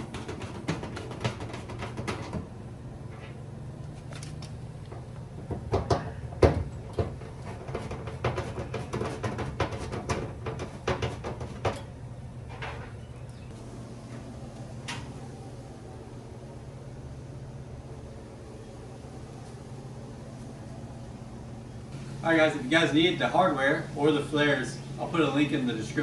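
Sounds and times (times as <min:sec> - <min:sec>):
hand tools clicking and knocking: 0:00.0 - 0:02.5, 0:04.1 - 0:12.0
steady low hum: 0:00.0 - 0:26.0.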